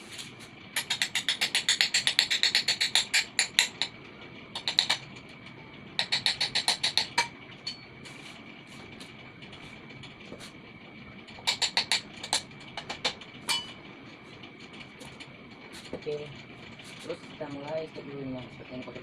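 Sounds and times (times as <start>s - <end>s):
rapid sharp clicks: 0.8s - 4.0s, 6.0s - 7.2s, 11.3s - 13.3s.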